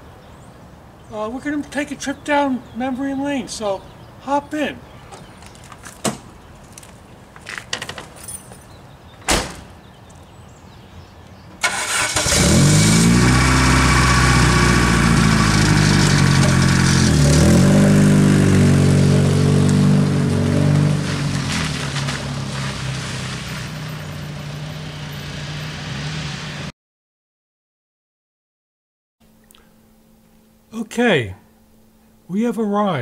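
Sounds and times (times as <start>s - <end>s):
car engine revving: 11.6s - 26.7s.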